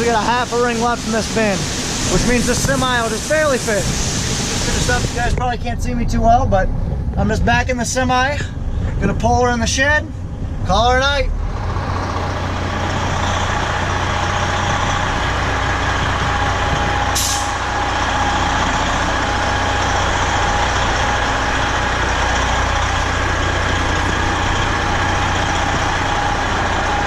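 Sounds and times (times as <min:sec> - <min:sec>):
truck diesel engine running: 0:00.0 - 0:07.2, 0:10.2 - 0:27.0
air hiss burst: 0:00.4 - 0:05.4, 0:17.1 - 0:17.6.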